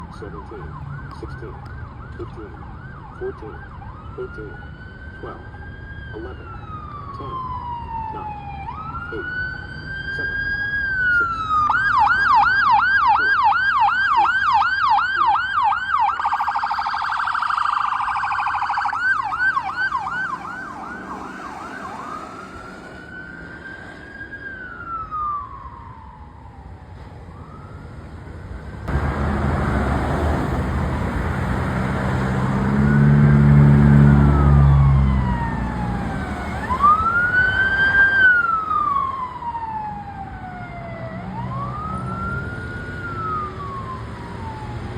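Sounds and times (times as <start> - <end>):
electronic siren yelp and wail: 0.0 - 27.7, 32.3 - 44.9
harsh smeared siren tone: 0.0 - 27.7, 32.1 - 44.9
vehicle engine passing: 17.1 - 25.4, 27.4 - 39.8, 40.4 - 44.9.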